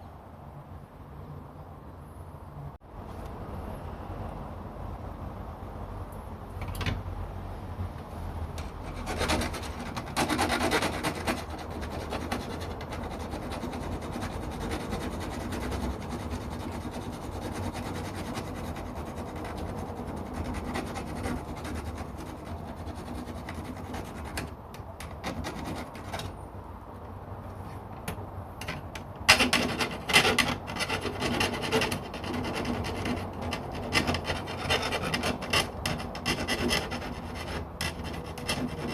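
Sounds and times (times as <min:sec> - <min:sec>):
hacksaw rasping through metal: 0:08.6 - 0:26.4, 0:28.6 - 0:38.9.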